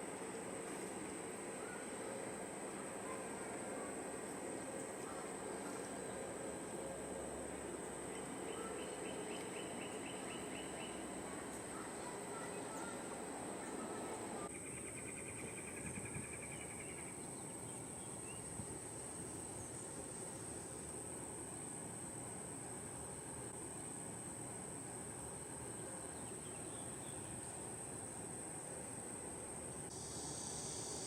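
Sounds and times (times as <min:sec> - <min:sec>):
high-pitched insect drone: 0:29.9 - 0:31.0.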